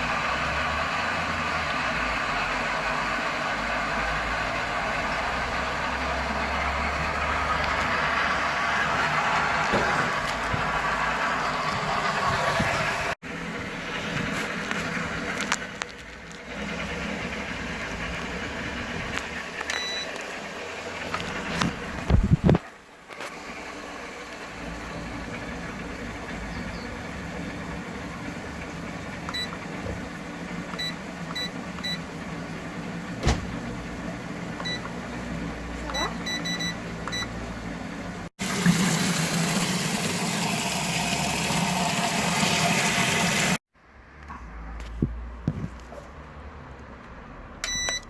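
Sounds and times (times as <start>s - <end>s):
short electronic beeps: 30.8s - 32.0s, 35.9s - 37.3s, 47.7s - 48.0s.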